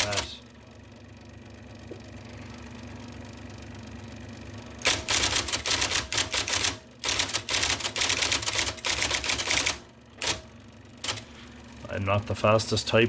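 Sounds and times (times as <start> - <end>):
typewriter keystrokes: 0.0 - 0.3, 4.8 - 10.4, 11.0 - 11.2
electric typewriter motor humming: 0.0 - 0.5, 4.4 - 12.0.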